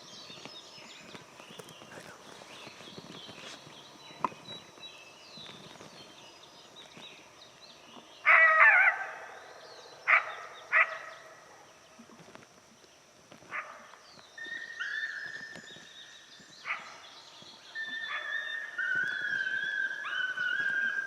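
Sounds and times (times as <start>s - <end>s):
coyote yelping: 8.2s - 9.2s
coyote barking: 8.2s - 9.4s, 10.0s - 11.6s, 17.8s - 21.0s
faint bird chirps: 13.6s - 21.0s.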